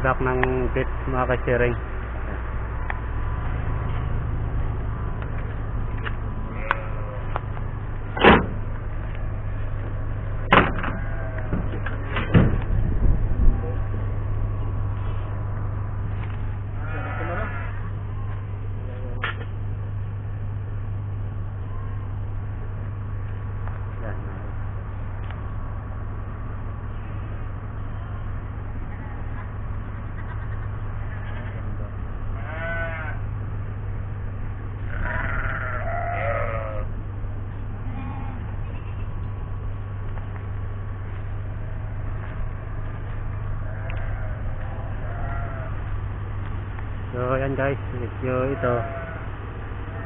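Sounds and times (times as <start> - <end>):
faint steady whine: 0.0 - 50.0
low machine hum: 0.0 - 50.0.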